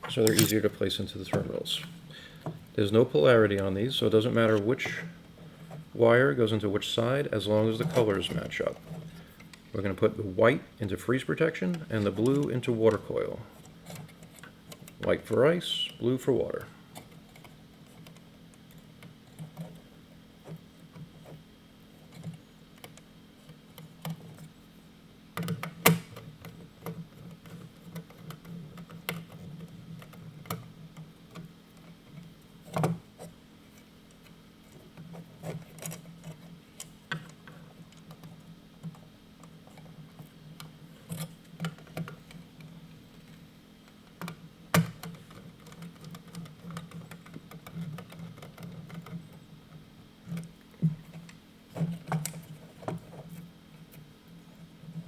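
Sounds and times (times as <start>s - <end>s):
screwdriver clicks and taps: 0.1s - 0.6s.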